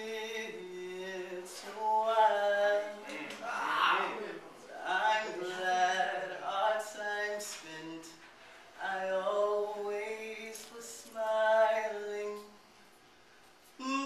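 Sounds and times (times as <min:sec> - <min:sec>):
person singing unaccompanied: 0:13.8 - 0:14.0.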